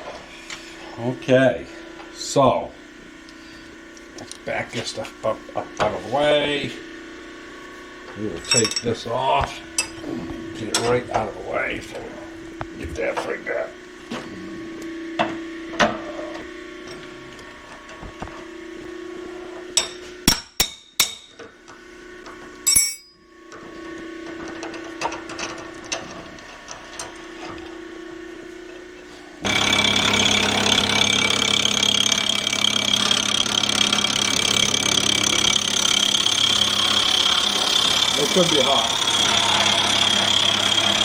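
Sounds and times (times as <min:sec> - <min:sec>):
steady hum: 0:00.0 - 0:21.4
power tool running loudly: 0:00.1 - 0:20.2, 0:23.5 - 0:41.0
metal tools knocking and clanking: 0:08.4 - 0:08.9, 0:22.7 - 0:23.2.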